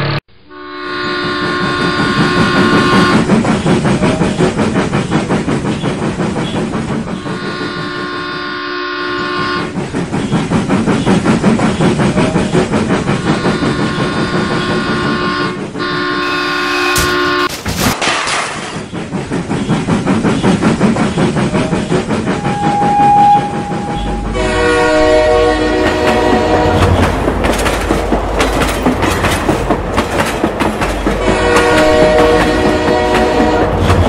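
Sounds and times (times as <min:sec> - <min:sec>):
multi-tone train whistle: 0:00.5 - 0:03.2, 0:07.3 - 0:09.8, 0:13.2 - 0:17.5, 0:22.3 - 0:27.0, 0:31.2 - 0:34.0
steam train chuffing: 0:01.0 - 0:17.5, 0:18.7 - 0:34.0.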